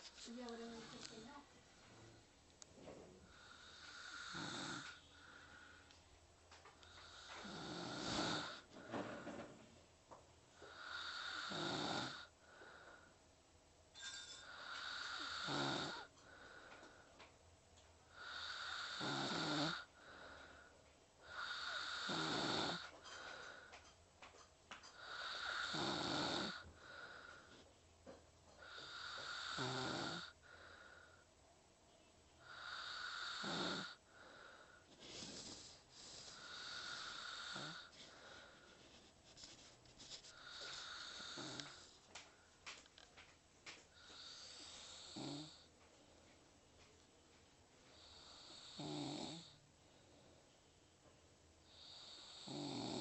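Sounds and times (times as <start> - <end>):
whistling snoring: 14.0 - 16.1, 18.2 - 19.8, 21.4 - 22.8, 25.1 - 26.6, 28.8 - 30.3, 32.4 - 34.0, 48.1 - 49.5, 51.8 - 53.0.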